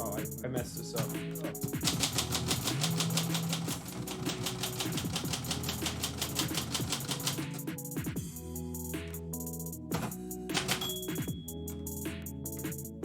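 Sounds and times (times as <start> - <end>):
background music: 0.0 - 13.0
typewriter keys clicking: 1.5 - 7.7, 10.5 - 11.1.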